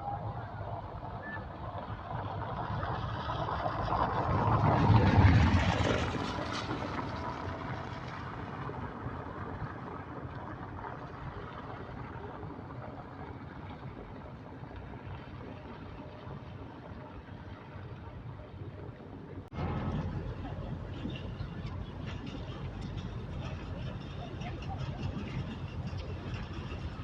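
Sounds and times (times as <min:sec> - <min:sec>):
harbour background noise: 0:00.0 - 0:27.0
motor vehicle passing: 0:02.0 - 0:10.3.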